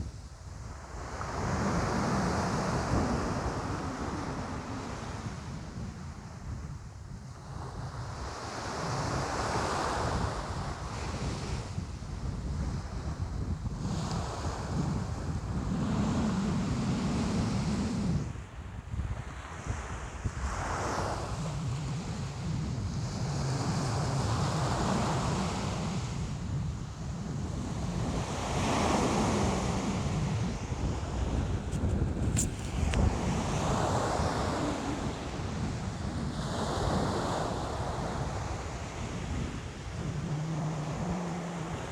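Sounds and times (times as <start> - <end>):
wind rumbling on microphone: 0.0 - 41.9
ocean waves breaking: 28.0 - 41.9.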